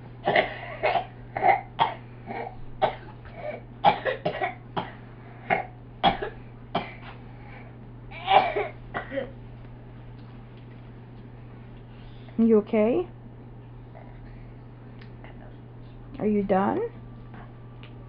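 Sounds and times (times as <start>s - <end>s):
child coughing: 0.2s - 7.1s, 8.1s - 9.4s.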